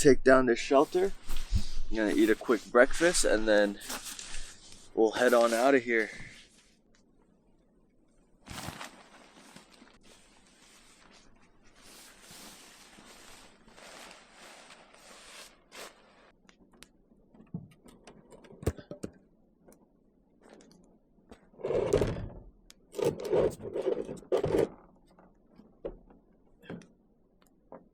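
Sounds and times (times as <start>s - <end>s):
camping gear rustling and scraping: 0.7s - 6.8s, 8.4s - 16.4s.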